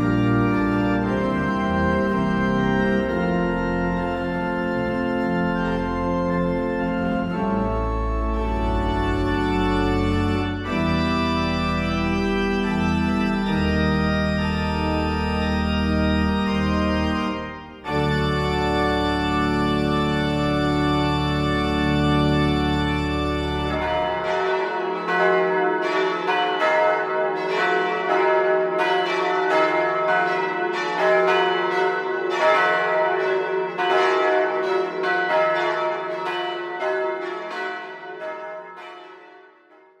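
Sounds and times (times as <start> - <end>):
pipe organ chord: 0.0 - 26.0
church bells pealing: 0.0 - 39.8.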